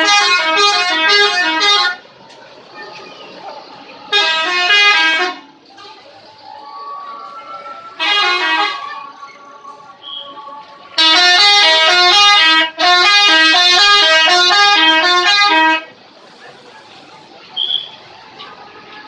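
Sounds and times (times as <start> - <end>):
multi-tone musical air horn: 0.0 - 2.0, 4.1 - 5.5, 8.0 - 9.2, 10.0 - 16.0.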